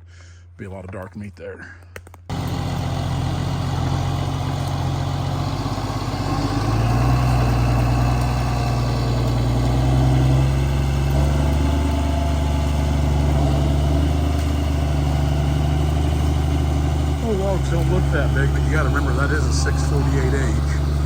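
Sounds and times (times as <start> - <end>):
diesel engine revving: 2.3 - 21.0.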